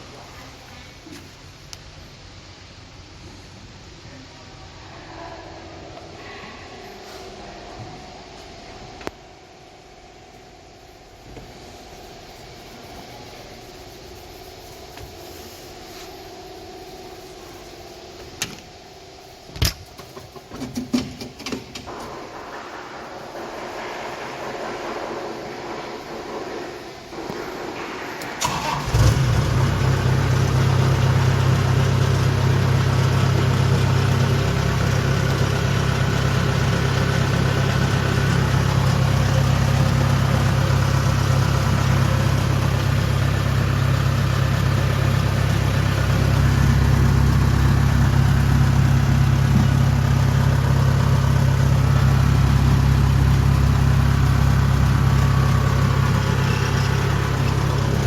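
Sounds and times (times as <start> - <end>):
diesel engine starting and idling: 20.0 - 58.0.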